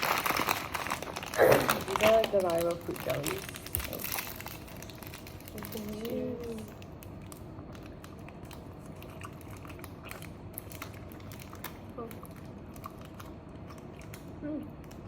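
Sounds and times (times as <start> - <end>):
plastic packaging crinkling: 0.0 - 15.0
steady room hum: 0.0 - 15.0.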